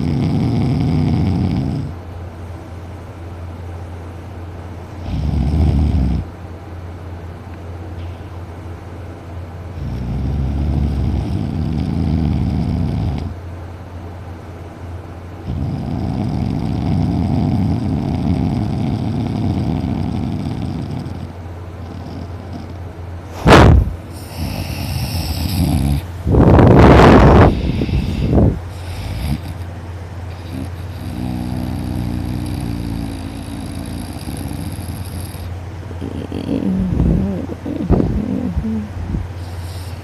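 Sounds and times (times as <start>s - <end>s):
loud deep snoring: 0.0s - 2.0s, 5.0s - 6.3s, 9.8s - 13.4s, 15.4s - 22.8s, 23.4s - 40.0s
quiet breathing: 27.4s - 40.0s.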